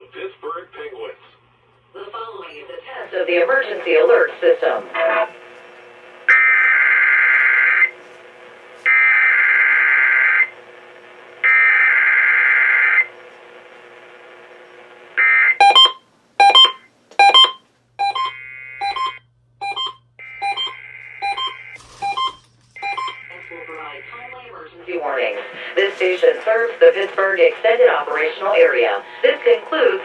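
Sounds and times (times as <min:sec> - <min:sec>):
short electronic beeps: 0:15.6 - 0:23.4
screechy data bursts: 0:20.2 - 0:24.2.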